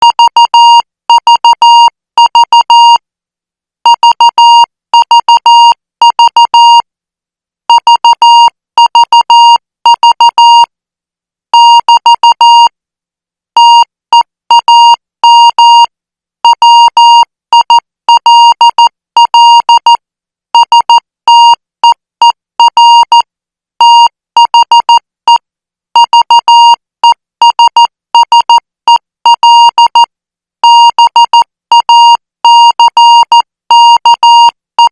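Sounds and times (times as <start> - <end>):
morse code beeps: 0.1 - 3.0, 3.9 - 6.8, 7.8 - 10.7, 11.6 - 12.7, 16.5 - 19.9, 20.6 - 21.6, 22.6 - 23.2, 26.0 - 26.8, 30.6 - 34.9.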